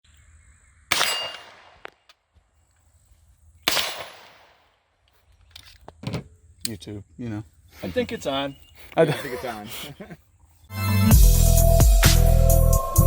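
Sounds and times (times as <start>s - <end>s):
steel target ringing: 0.9s - 1.7s
gunshot cracks: 3.6s - 4.6s.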